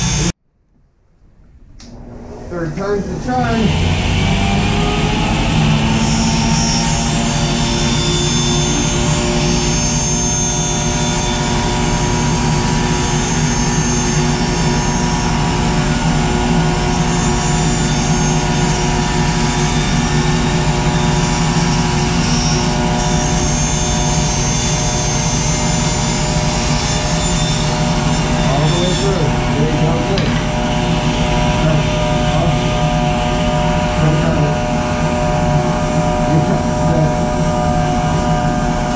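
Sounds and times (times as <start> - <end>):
table saw cutting board: 0.0 - 0.4, 2.5 - 38.9.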